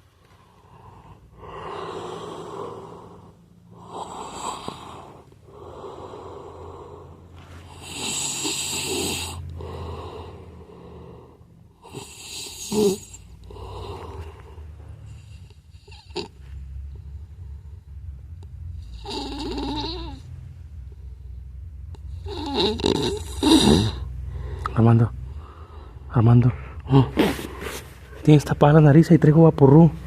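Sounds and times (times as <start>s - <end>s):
man snoring: 0.6s - 16.4s, 18.8s - 20.3s, 22.0s - 24.6s.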